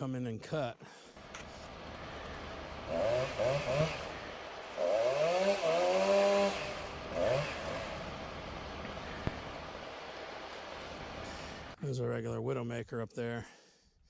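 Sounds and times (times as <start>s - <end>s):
chainsaw revving: 1.2s - 11.8s.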